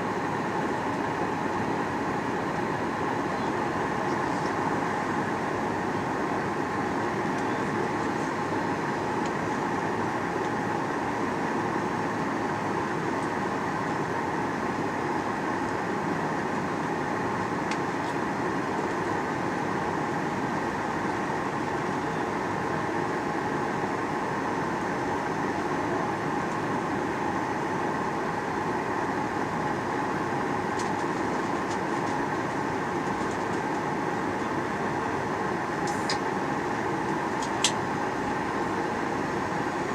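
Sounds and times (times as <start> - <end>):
airplane cabin drone: 0.0 - 39.9.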